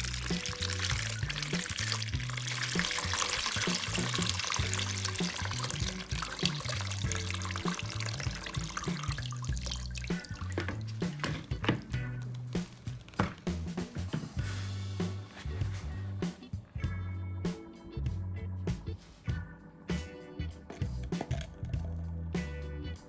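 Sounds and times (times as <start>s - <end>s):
water pouring in a stream: 0.0s - 11.9s
background music with bass line: 0.0s - 23.0s.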